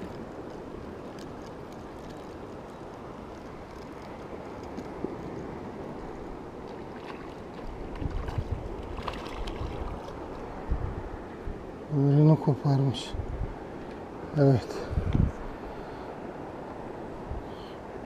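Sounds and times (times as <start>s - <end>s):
wind buffeting microphone: 0.0s - 11.7s, 12.9s - 18.0s
water rushing: 0.0s - 13.2s.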